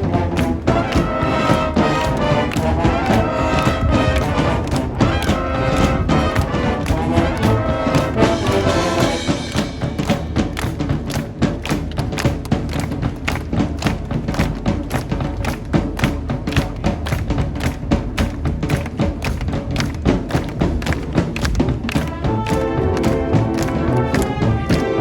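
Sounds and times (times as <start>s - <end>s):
brass sustaining chords: 0.0s - 11.8s, 19.8s - 25.0s
rapid drumline strokes: 0.0s - 25.0s.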